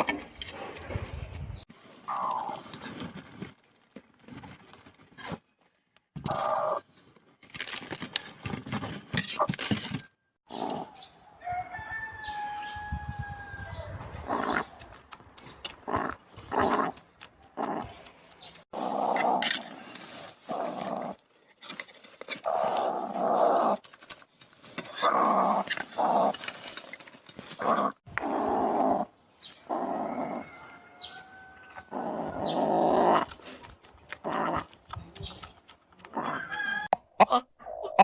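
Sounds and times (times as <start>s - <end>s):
animal growling: 18.7s - 21.3s, 27.6s - 30.9s, 31.7s - 35.1s.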